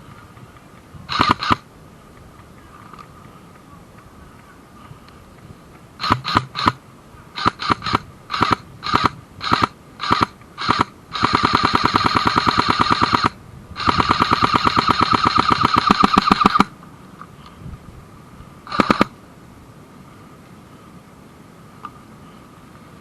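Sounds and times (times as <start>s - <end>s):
airsoft gun firing bursts: 1.1s - 1.6s, 6.0s - 6.8s, 7.4s - 16.7s, 18.7s - 19.1s.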